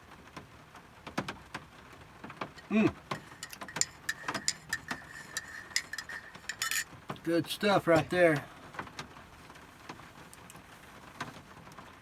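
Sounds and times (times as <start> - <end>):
rain dripping on van roof: 0.0 - 3.3, 6.9 - 12.0
short voice-like sound: 2.6 - 3.0.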